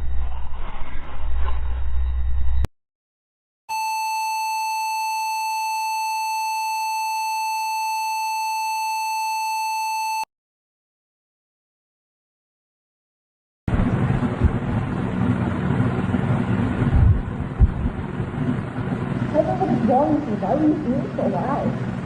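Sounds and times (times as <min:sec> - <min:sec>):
heavy low rumble: 0:13.7 - 0:22.0.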